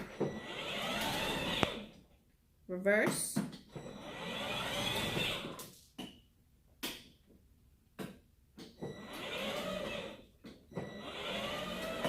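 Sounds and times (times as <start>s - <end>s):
toy car electric motors whirring: 0.1s - 2.0s, 3.9s - 5.8s, 8.9s - 12.0s.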